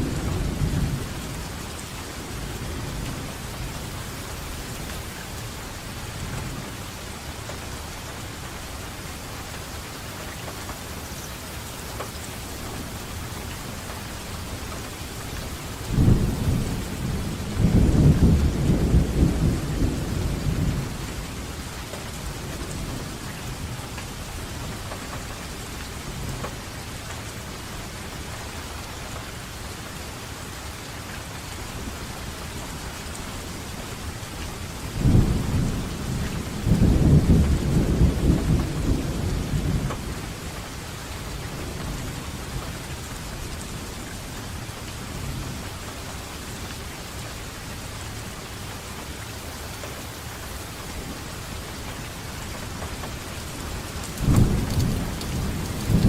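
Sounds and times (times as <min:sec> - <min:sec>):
thunder rumbling: 0:00.0 - 0:06.8, 0:15.4 - 0:21.6, 0:34.9 - 0:40.6, 0:54.0 - 0:56.0
steady rainfall: 0:00.0 - 0:56.0.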